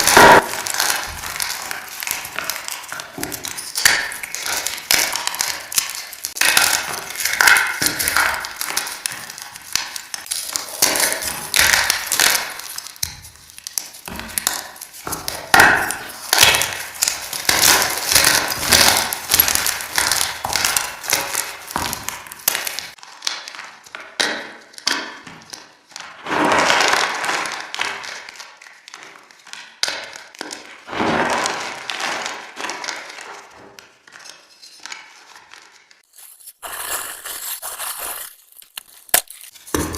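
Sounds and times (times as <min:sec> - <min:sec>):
chalk crunching with echo: 0:00.0 - 0:23.5, 0:34.2 - 0:39.9.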